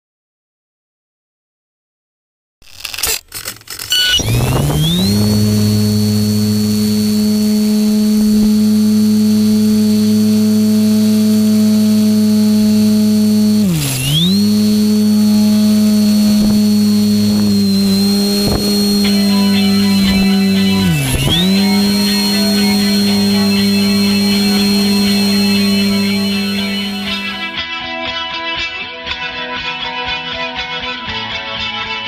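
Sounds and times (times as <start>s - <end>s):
electric motor and propeller whine: 2.8s - 27.6s.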